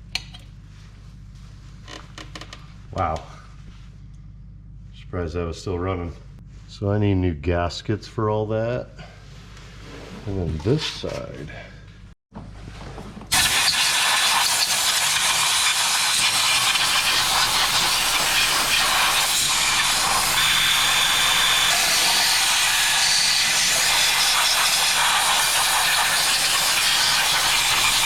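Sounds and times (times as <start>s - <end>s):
loud steady hiss: 13.3s - 28.0s.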